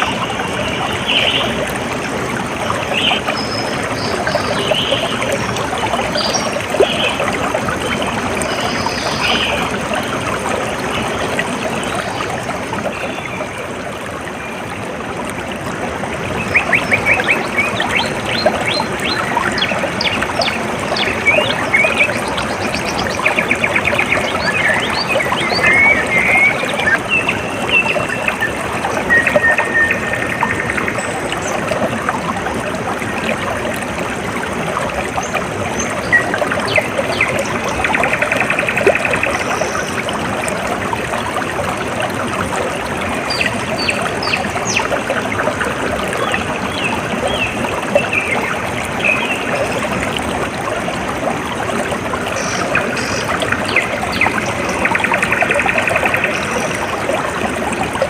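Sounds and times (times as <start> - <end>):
water trickling: 0.0 - 58.0
birds chirping: 16.4 - 31.7.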